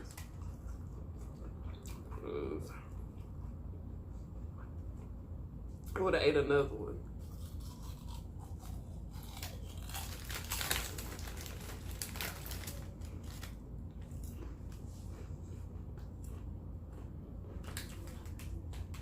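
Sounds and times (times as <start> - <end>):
chips crunched and chewed: 7.2 - 14.9, 16.0 - 19.0.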